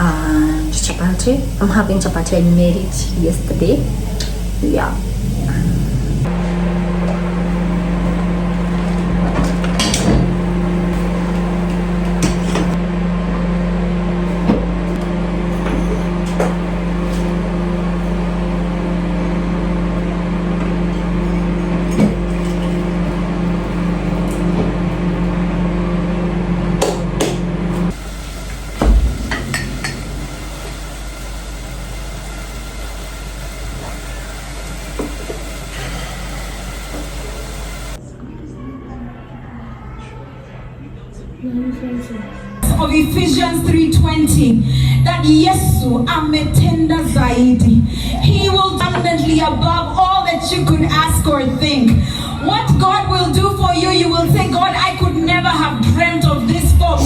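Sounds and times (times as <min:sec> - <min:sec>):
kitchen appliance humming: 0:00.0 - 0:38.0
loud knock: 0:28.8 - 0:31.1.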